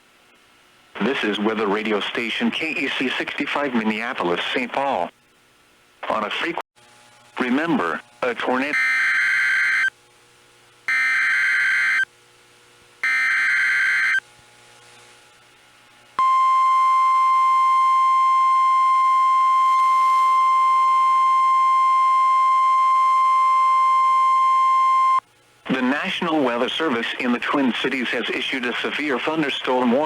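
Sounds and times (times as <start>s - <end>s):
steady warning alarm tone: 8.7s - 9.9s, 10.9s - 12.1s, 13.0s - 14.2s.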